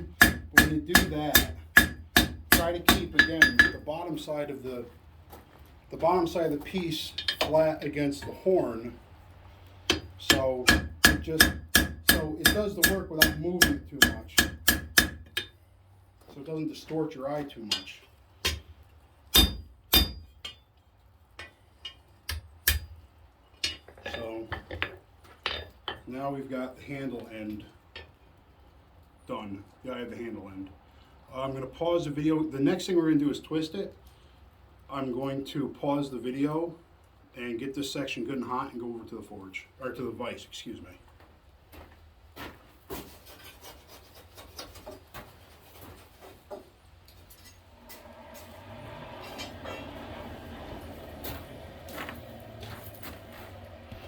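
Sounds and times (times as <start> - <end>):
hammer striking hot steel on anvil: 0.0 - 3.8, 9.9 - 15.6, 17.7 - 18.7, 19.3 - 20.6, 21.4 - 23.0
forge roar: 47.7 - 53.1.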